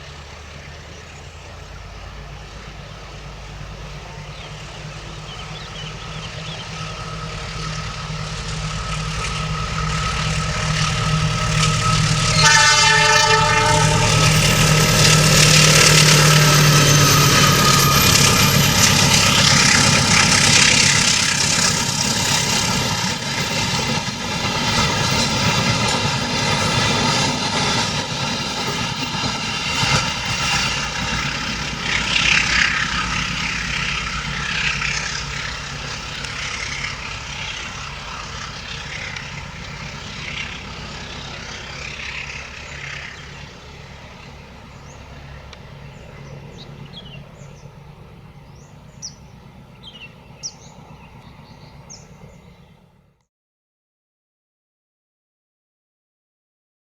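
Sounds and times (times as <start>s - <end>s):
diesel train engine: 0.0s - 53.2s
rumble of train wheels: 0.0s - 53.2s
train horn: 5.0s - 20.4s.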